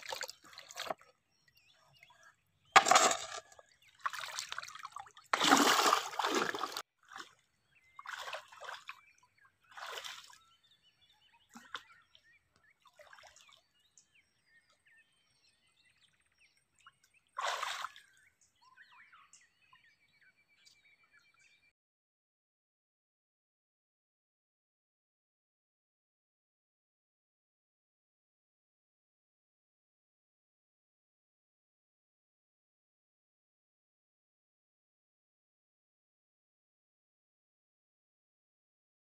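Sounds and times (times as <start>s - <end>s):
water sloshing and splashing: 0.0s - 1.2s, 2.8s - 10.4s, 17.4s - 18.2s.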